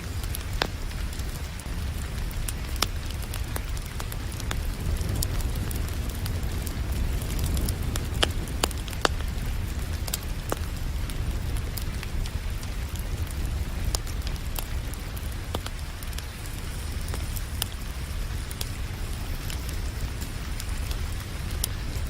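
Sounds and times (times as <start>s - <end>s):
rain hissing: 0.0s - 22.0s
wood fire crackling: 0.0s - 22.0s.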